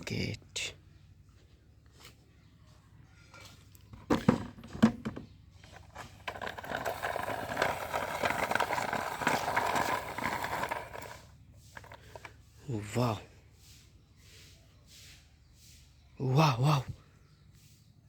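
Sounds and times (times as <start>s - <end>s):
plastic toys clicking and rattling: 4.0s - 12.4s.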